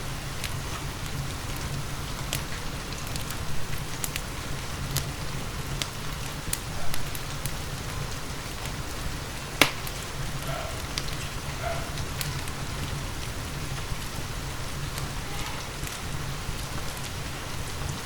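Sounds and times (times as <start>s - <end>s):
steady rain hissing: 0.0s - 18.0s
wood fire crackling: 0.0s - 18.0s.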